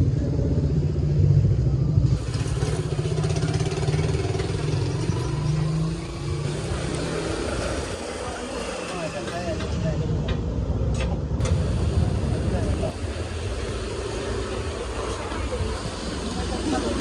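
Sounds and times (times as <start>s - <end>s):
motorcycle engine revving: 0.0s - 9.1s.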